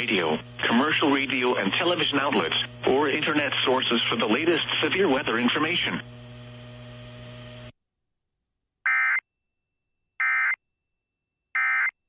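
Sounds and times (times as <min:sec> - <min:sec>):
low radio hum: 0:00.0 - 0:07.7.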